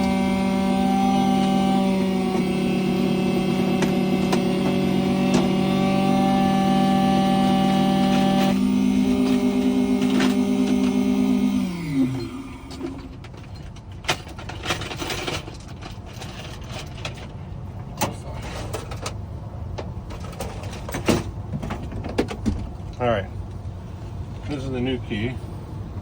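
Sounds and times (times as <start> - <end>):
key-cutting machine motor humming: 0.0 - 13.0.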